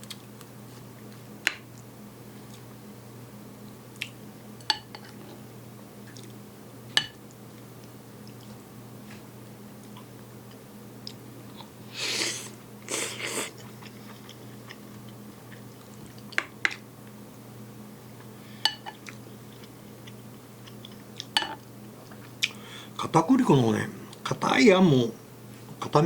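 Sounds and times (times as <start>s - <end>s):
person chewing: 9.9s - 16.8s, 18.7s - 21.4s, 22.0s - 22.6s.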